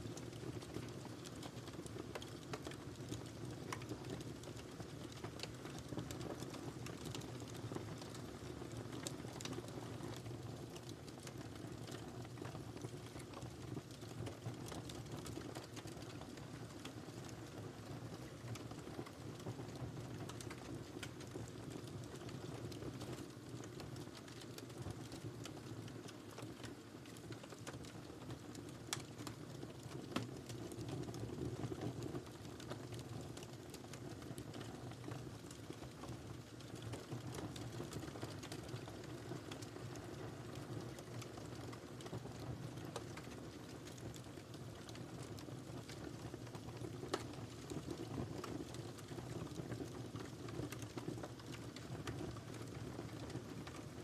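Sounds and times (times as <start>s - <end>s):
fire crackling and popping: 0.0s - 54.0s
low rumble of flames: 0.1s - 54.0s.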